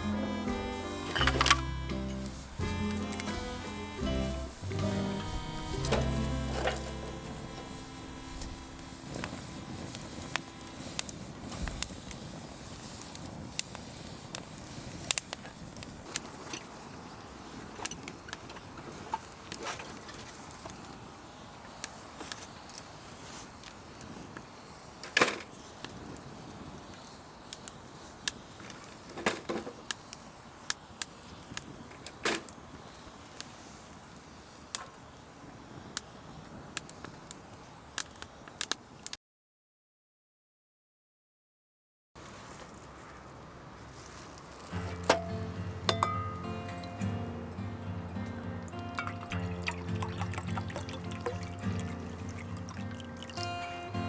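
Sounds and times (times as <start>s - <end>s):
campfire pops and snaps: 0.0s - 39.2s, 42.2s - 54.0s
low fire hiss: 0.0s - 39.2s, 42.2s - 54.0s.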